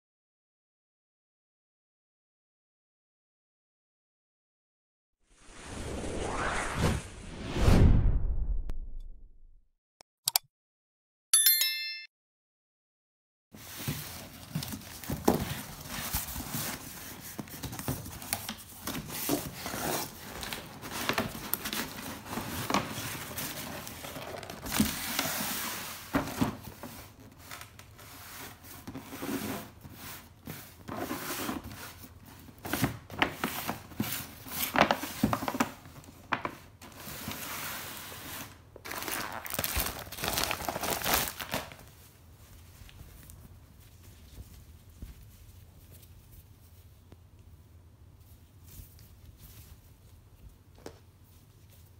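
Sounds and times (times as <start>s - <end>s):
packaging crinkling and rustling: 13.7s - 28.0s, 38.8s - 43.5s
packaging tearing: 38.9s - 41.9s.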